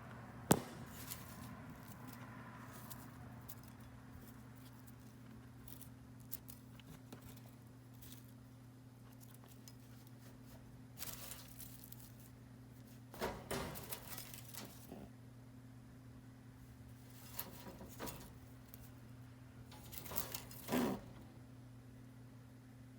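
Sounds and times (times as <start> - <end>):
electrical hum: 0.0 - 22.9
dry hay rustling: 0.5 - 15.1, 16.9 - 19.1.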